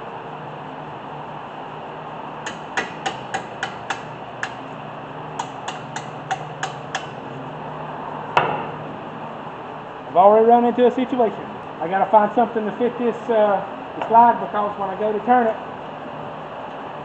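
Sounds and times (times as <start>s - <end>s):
hammer tapping on metal: 2.5s - 4.6s, 5.4s - 7.2s.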